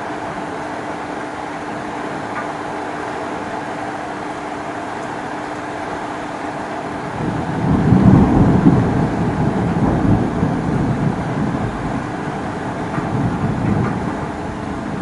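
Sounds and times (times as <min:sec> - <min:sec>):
low roll of thunder: 0:07.0 - 0:15.0.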